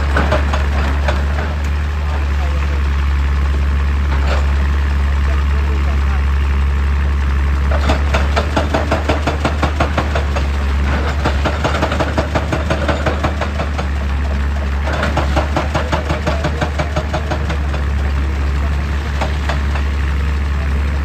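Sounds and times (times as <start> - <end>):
excavator diesel engine running: 0.0 - 21.0
rhythmic rock-breaking hammering: 7.8 - 20.0.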